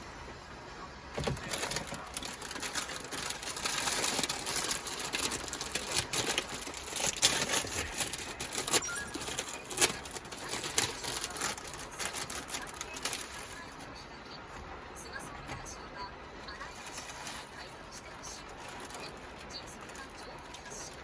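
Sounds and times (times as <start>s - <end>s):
rain on a metal roof: 0.0s - 21.0s.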